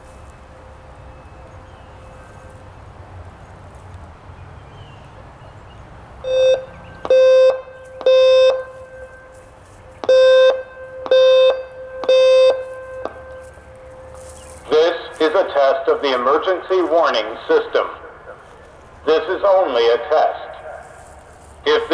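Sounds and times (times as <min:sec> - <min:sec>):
warning siren pulse tones: 0:06.2 - 0:16.8.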